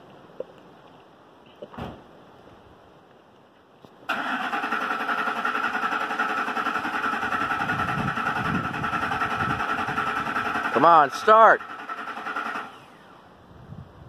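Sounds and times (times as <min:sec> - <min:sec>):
starter cranking engine: 0:04.1 - 0:13.2.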